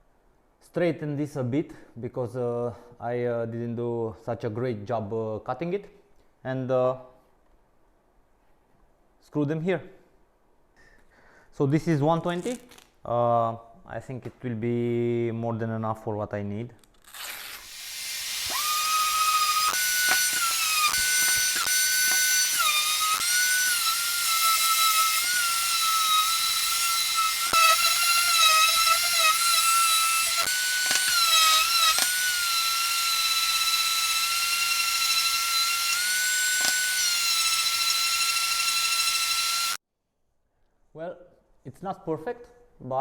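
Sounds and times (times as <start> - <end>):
power tool whine sanding wood: 17.2 - 39.8.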